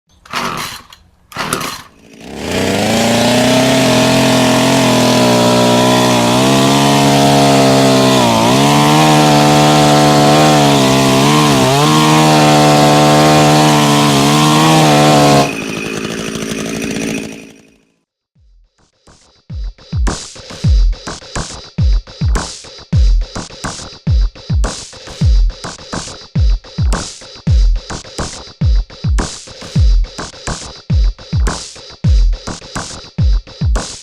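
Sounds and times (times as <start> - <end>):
chainsaw carving wood: 0.3 - 17.9.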